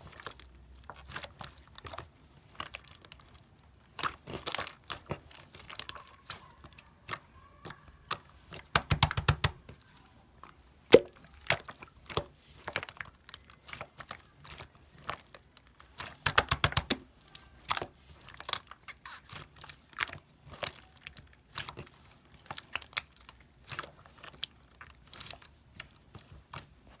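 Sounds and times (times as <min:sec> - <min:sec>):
fast crackling of slime: 0:08.6 - 0:09.8, 0:10.9 - 0:17.1.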